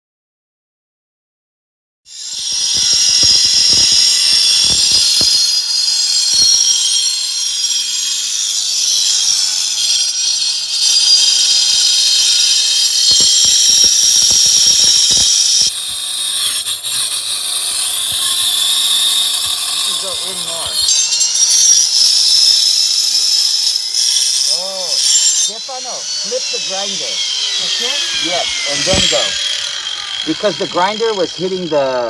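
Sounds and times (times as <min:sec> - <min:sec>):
angle grinder cutting pipe: 0:02.1 - 0:32.0
scattered knocks: 0:02.3 - 0:06.7, 0:27.9 - 0:31.7.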